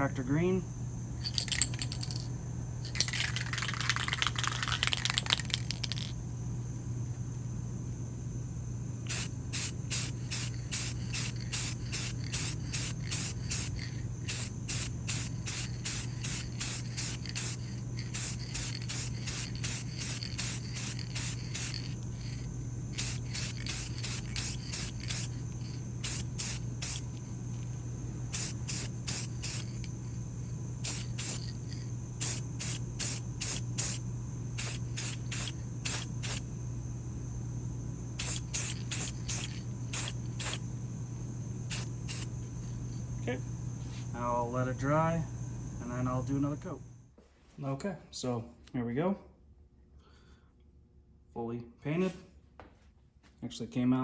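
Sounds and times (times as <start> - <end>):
spray paint hissing: 2.9 - 6.1, 9.1 - 27.2, 28.3 - 29.9, 30.8 - 34.0, 34.6 - 36.5, 38.2 - 40.6, 41.7 - 42.3.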